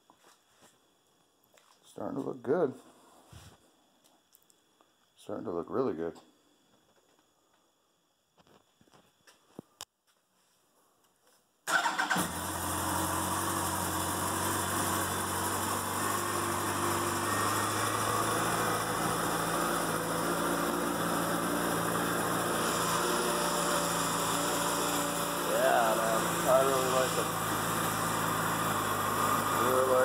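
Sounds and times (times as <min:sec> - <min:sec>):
motorcycle engine starting and idling: 0:11.6 - 0:30.0.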